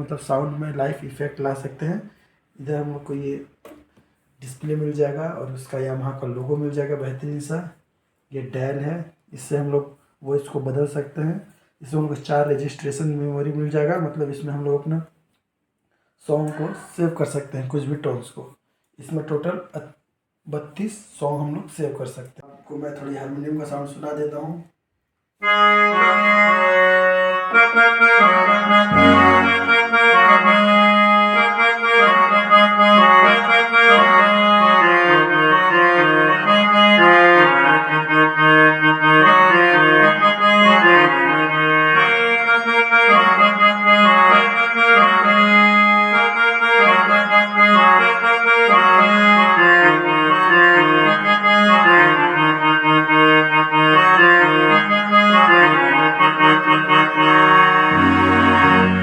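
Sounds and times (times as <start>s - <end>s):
keyboard harmonium melody: 25.4s - 59.0s.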